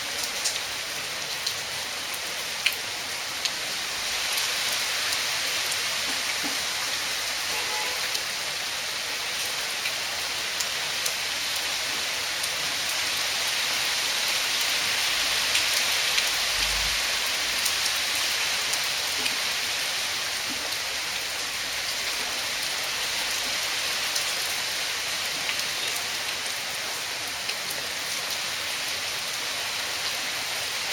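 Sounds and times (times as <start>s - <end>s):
raindrops ticking on surface: 0.1s - 8.3s, 14.5s - 19.6s, 24.2s - 28.4s
heavy rain hissing: 11.2s - 30.9s.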